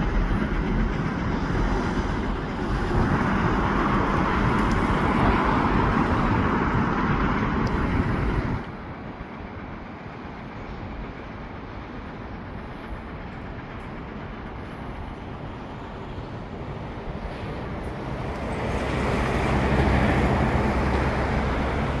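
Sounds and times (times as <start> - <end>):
vehicle rumble: 0.0 - 9.5, 12.5 - 22.0.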